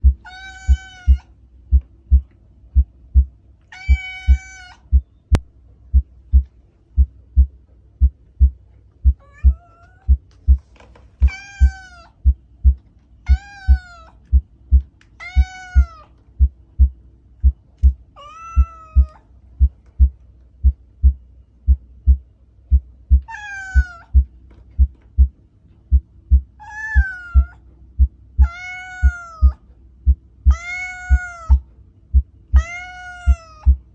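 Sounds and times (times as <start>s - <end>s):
faint low hum: 0.0s - 33.9s
heartbeat: 0.0s - 33.9s
cats meowing: 0.2s - 1.4s, 3.7s - 5.0s, 9.1s - 10.2s, 11.2s - 12.2s, 13.2s - 14.4s, 15.1s - 16.2s, 18.2s - 19.3s, 23.2s - 24.2s, 26.6s - 27.7s, 28.4s - 29.6s, 30.5s - 31.7s, 32.5s - 33.8s.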